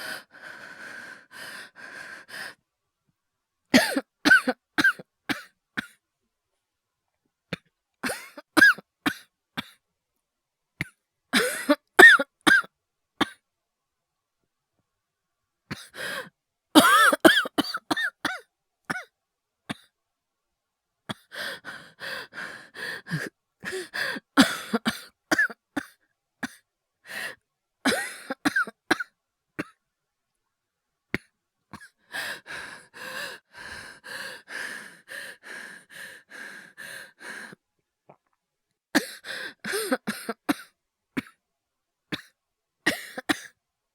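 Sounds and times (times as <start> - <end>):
fast gasping breaths: 0.0 - 2.6, 15.7 - 16.3, 21.1 - 25.1, 27.0 - 27.4, 31.8 - 37.6, 39.0 - 40.3
person coughing harshly: 3.8 - 6.0, 8.0 - 9.7, 11.4 - 13.4, 16.8 - 19.1, 23.8 - 26.6, 27.9 - 29.7, 39.0 - 41.4, 42.9 - 43.6.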